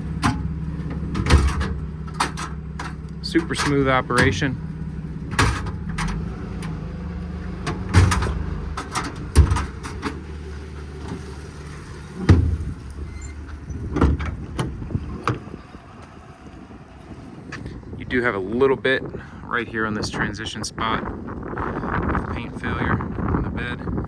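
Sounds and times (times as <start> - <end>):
drawers clunking shut: 0.0 - 4.6, 5.2 - 15.5
steady low hum: 0.0 - 24.0
tool drawers sliding: 5.3 - 15.4.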